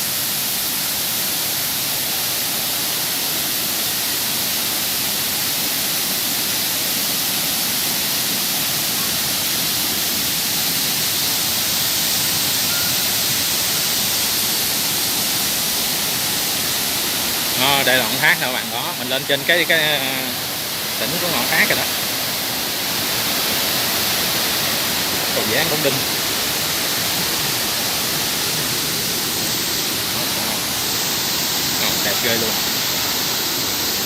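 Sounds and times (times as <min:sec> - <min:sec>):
waterfall rushing: 0:00.0 - 0:34.0.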